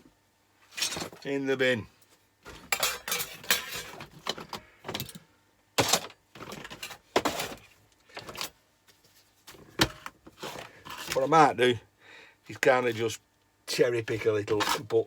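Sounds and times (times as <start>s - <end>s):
scrap dropped into bin: 0.7s - 1.2s, 2.5s - 5.2s, 5.8s - 8.5s.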